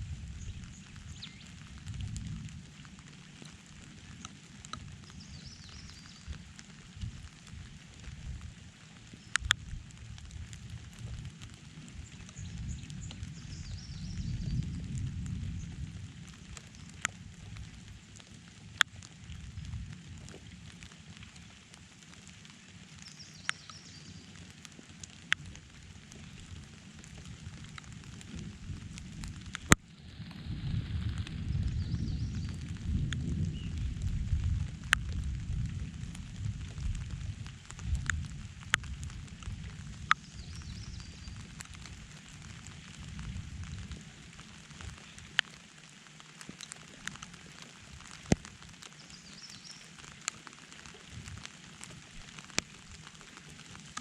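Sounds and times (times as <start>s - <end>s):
rain falling: 0.0s - 54.0s
low rumble: 25.6s - 45.0s.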